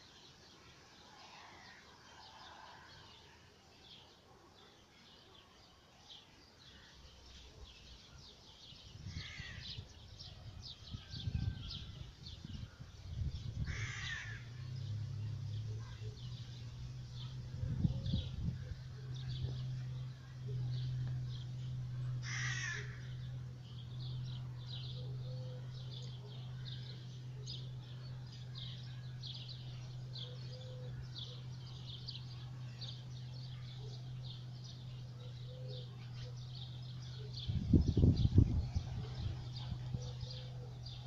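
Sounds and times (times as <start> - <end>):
small birds chirping: 0.0 - 41.0
steady low hum: 5.8 - 41.0
crow cawing: 9.2 - 9.6, 13.7 - 14.5, 22.2 - 23.1
loud low rumble: 11.2 - 27.1, 36.4 - 41.0.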